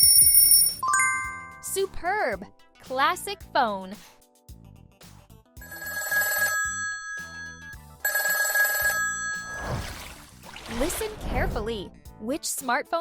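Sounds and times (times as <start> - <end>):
telephone bell ringing: 0.0 - 1.6, 5.6 - 9.8
soft background music: 0.0 - 13.0.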